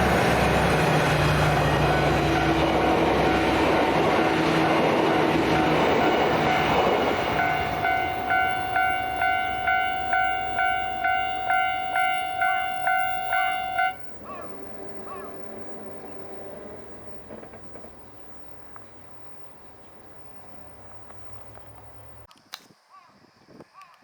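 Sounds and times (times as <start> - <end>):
train rumble: 0.0 - 22.3
crossing alarm bell dinging: 1.1 - 17.2.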